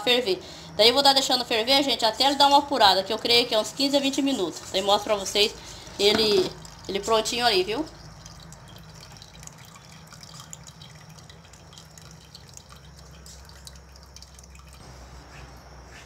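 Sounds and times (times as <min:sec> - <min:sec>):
juice dripping through a sieve: 0:04.6 - 0:15.8.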